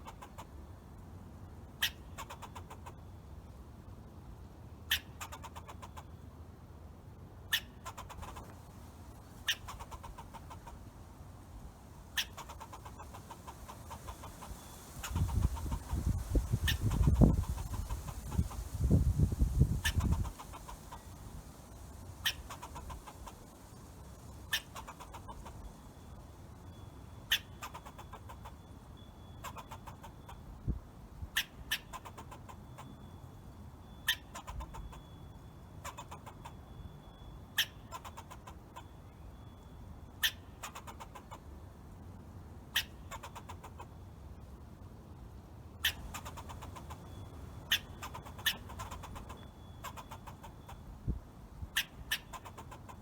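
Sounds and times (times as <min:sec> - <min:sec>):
squirrel chucking and trilling: 0:00.0 - 0:00.5, 0:01.8 - 0:03.0, 0:04.9 - 0:06.1, 0:07.5 - 0:08.6, 0:09.3 - 0:10.9, 0:12.1 - 0:26.1, 0:27.3 - 0:28.7, 0:29.4 - 0:30.5, 0:31.4 - 0:32.9, 0:34.1 - 0:35.1, 0:35.8 - 0:36.6, 0:37.6 - 0:38.9, 0:40.2 - 0:41.5, 0:42.7 - 0:43.9, 0:45.8 - 0:50.9, 0:51.7 - 0:53.0.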